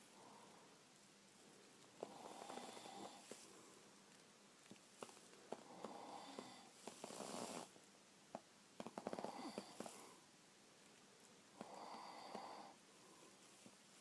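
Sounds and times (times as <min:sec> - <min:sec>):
person snoring: 0:02.0 - 0:03.2, 0:05.5 - 0:07.7, 0:09.0 - 0:10.2, 0:11.6 - 0:12.8.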